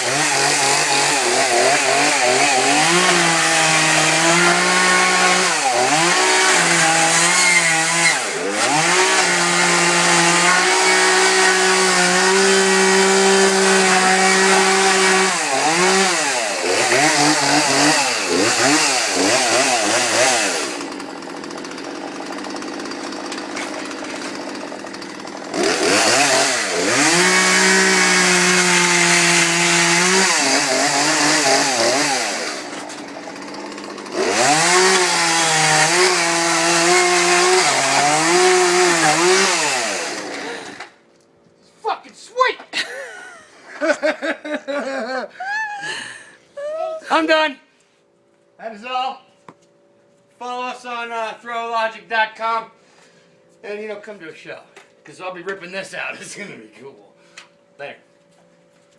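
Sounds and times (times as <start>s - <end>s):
chainsaw revving: 0.0s - 41.0s.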